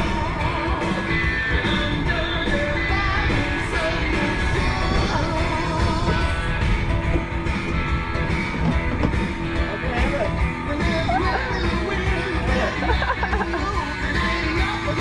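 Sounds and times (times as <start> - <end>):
person singing: 0.0 - 6.6, 10.6 - 15.0
guitar: 0.0 - 15.0.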